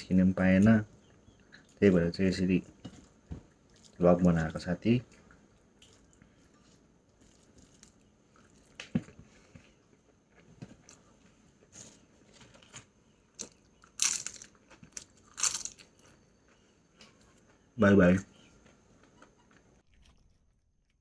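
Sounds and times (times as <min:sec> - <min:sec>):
person chewing: 0:02.6 - 0:04.0, 0:05.0 - 0:11.9, 0:12.5 - 0:17.5
crunching: 0:02.6 - 0:16.2.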